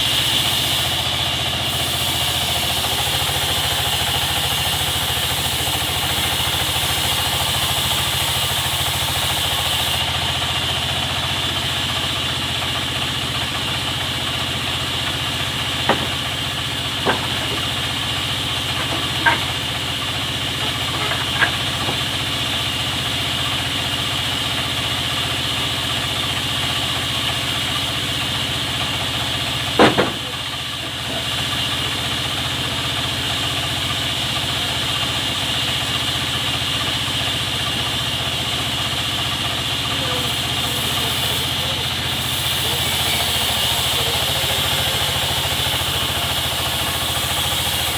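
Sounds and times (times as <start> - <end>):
sawmill machinery humming and whining: 0.0 - 47.9
sharp knocks: 15.8 - 19.8, 20.6 - 22.3, 29.8 - 30.4.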